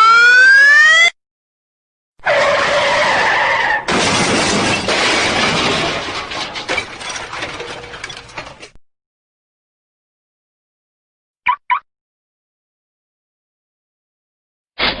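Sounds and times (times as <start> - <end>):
tyres screeching: 2.2 - 4.1
car crash smash with shattering: 2.3 - 8.8
debris clattering: 2.4 - 8.8.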